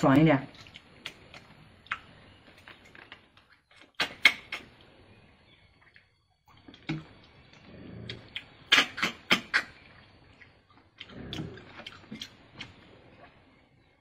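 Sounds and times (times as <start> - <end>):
lip smacks and shell clicks: 0.6 - 4.8, 8.1 - 9.8.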